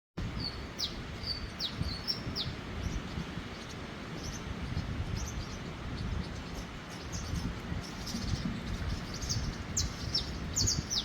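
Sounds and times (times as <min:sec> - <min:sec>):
bird whistling and chirping: 0:09.0 - 0:11.0.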